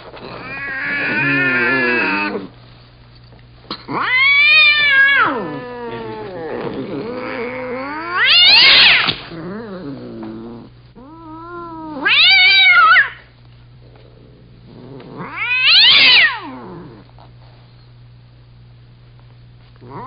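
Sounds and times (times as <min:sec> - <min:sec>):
cats yowling angrily: 0:00.2 - 0:02.5, 0:03.8 - 0:13.3, 0:14.8 - 0:17.0.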